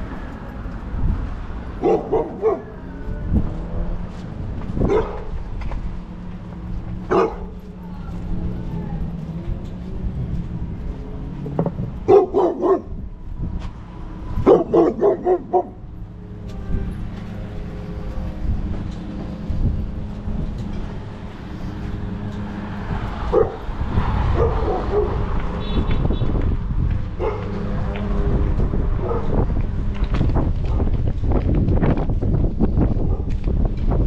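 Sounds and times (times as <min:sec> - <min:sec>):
dog barking: 0:01.8 - 0:02.8, 0:04.8 - 0:05.3, 0:07.1 - 0:07.6, 0:12.0 - 0:13.0, 0:14.4 - 0:15.8, 0:23.3 - 0:23.6, 0:24.3 - 0:25.2, 0:27.2 - 0:27.6, 0:29.0 - 0:29.4.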